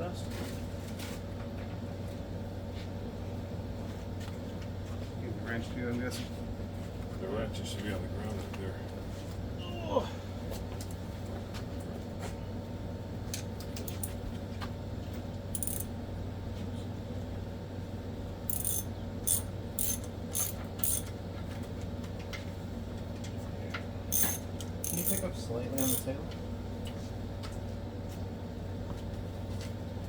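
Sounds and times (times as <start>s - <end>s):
steady low hum: 12.5s - 21.4s, 23.9s - 28.0s
ratchet wrench clicking: 13.9s - 14.1s, 15.6s - 15.9s, 18.5s - 21.1s, 24.1s - 26.2s.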